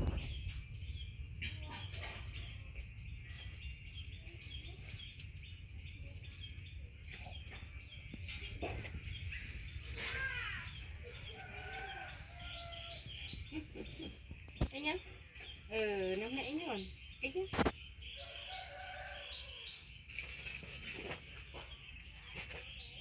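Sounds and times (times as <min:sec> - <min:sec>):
steady low rumble: 0:00.0 - 0:09.9
birds chirping: 0:00.0 - 0:23.0.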